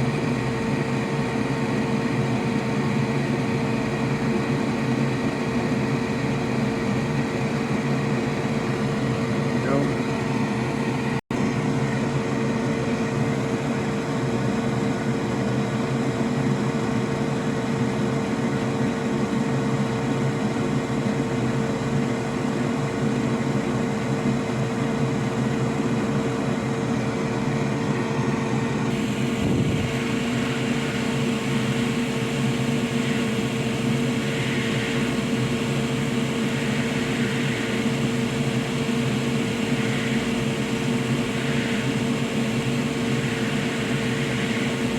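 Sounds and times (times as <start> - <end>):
electric blower humming: 28.8 - 44.9.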